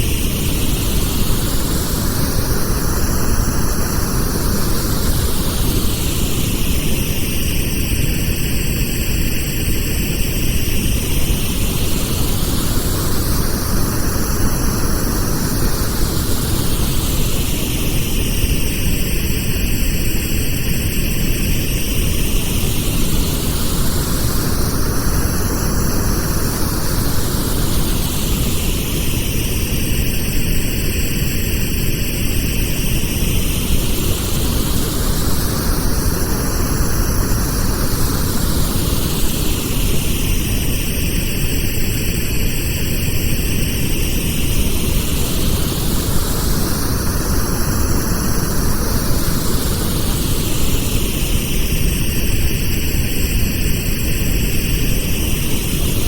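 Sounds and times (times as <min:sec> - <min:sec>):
pink noise with whooshing sweep: 0:22.1 - 0:42.2.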